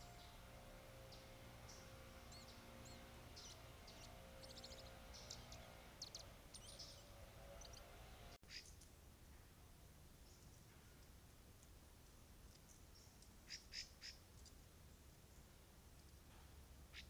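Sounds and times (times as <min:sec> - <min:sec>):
faint bird chirps: 0:00.0 - 0:08.9
quiet steady hum: 0:00.0 - 0:17.0.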